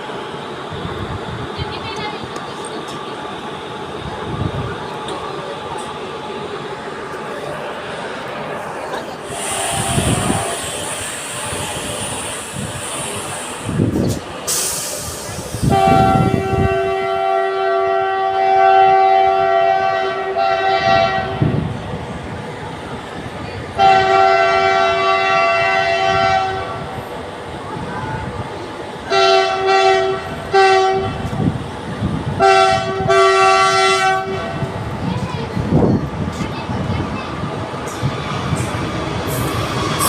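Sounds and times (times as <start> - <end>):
locomotive horn blasts: 15.6 - 21.5, 23.8 - 26.7, 29.1 - 31.3, 32.4 - 34.6.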